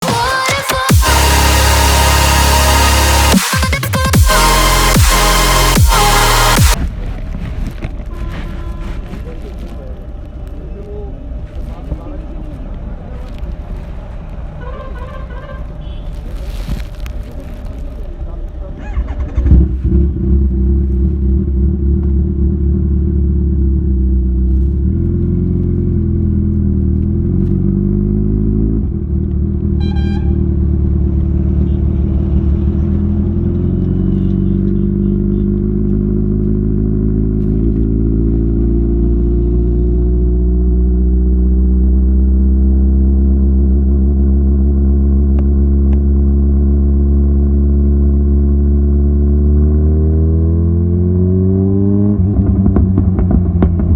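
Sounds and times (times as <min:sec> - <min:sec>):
motorcycle engine running: 0:52.1 - 0:53.9.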